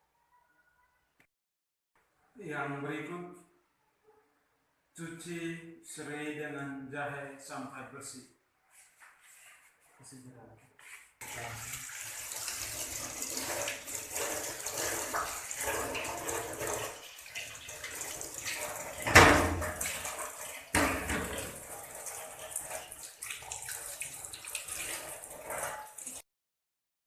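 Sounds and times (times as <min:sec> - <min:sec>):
water running and splashing: 0:11.2 - 0:26.2.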